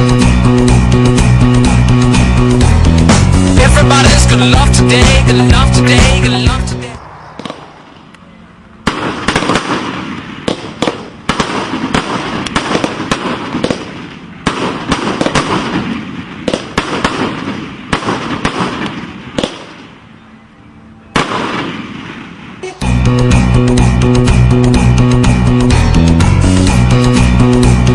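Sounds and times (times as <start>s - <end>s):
fireworks bangs and crackling: 3.7s - 8.0s, 8.8s - 20.0s, 21.2s - 22.6s.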